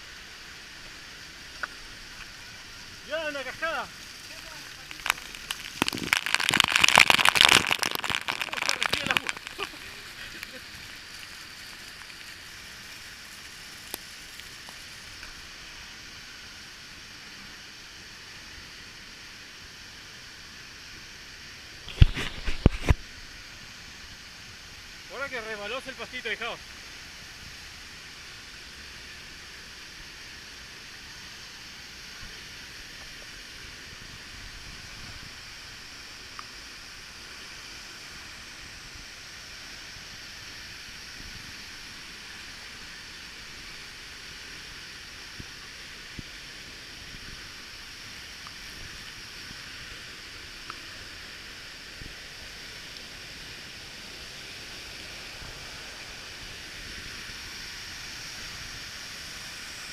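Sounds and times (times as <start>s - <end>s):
waterfall rushing: 0.0s - 17.0s, 21.6s - 27.2s.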